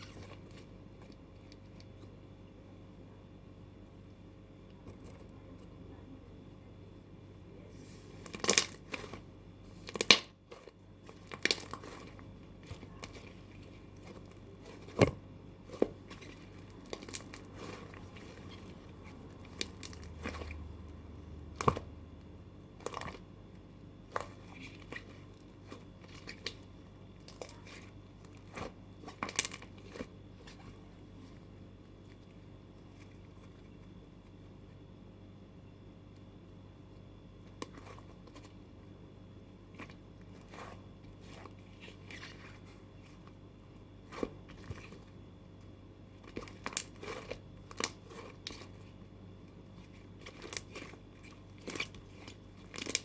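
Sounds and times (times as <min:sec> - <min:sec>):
slime popping and crackling: 0:49.7 - 0:53.0.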